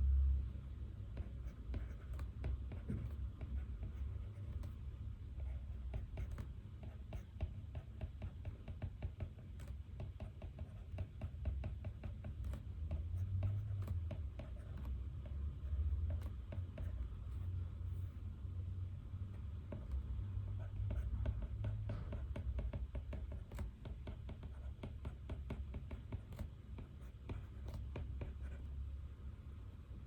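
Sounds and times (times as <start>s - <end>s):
low room hum: 0.0s - 30.0s
pen writing on paper: 1.0s - 18.2s, 19.3s - 28.7s.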